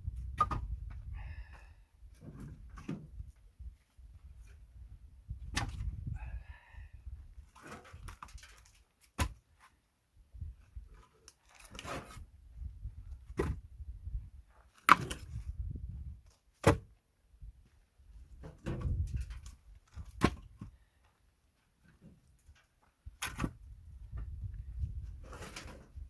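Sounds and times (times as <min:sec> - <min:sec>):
wooden logs knocking: 0:00.4 - 0:00.7.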